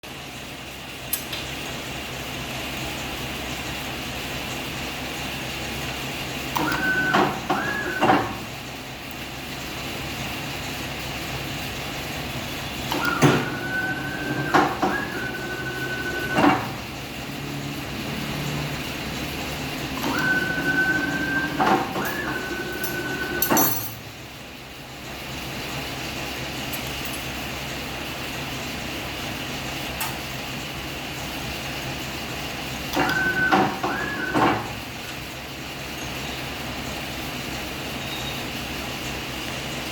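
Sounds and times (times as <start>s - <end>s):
mechanical hum: 0.0s - 39.9s
motors whining: 6.5s - 8.6s, 12.7s - 23.8s, 32.9s - 35.2s
machine clacks: 12.8s - 24.0s.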